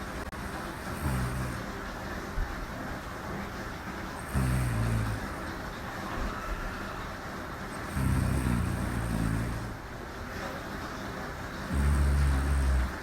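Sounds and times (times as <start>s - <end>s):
steady hiss: 0.0s - 13.0s
woman snoring: 0.9s - 1.7s, 4.3s - 5.4s, 7.8s - 9.8s, 11.7s - 13.0s.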